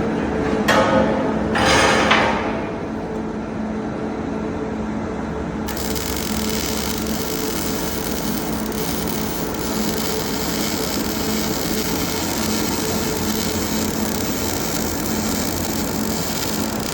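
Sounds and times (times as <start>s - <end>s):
metal lathe running: 5.6s - 16.9s.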